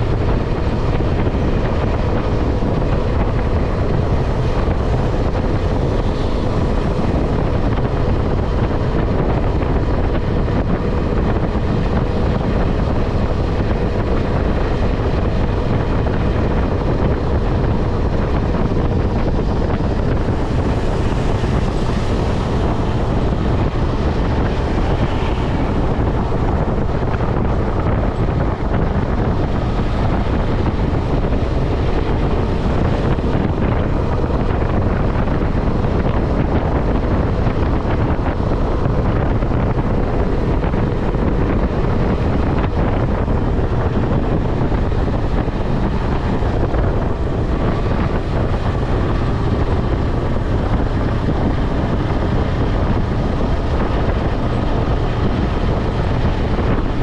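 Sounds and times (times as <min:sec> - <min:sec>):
motorcycle engine droning: 0:00.0 - 0:57.0
wind rush on microphone: 0:00.0 - 0:57.0.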